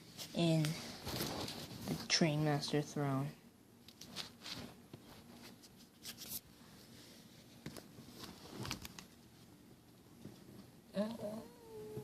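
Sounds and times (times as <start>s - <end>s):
rustling: 0.0s - 2.1s, 3.8s - 10.8s.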